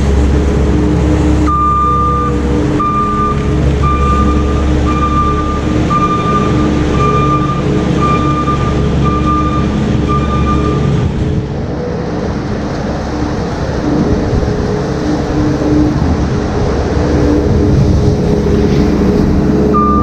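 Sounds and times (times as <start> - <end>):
engine running: 0.0 - 20.0
reversing alarm beeping: 1.4 - 11.1, 19.7 - 20.0.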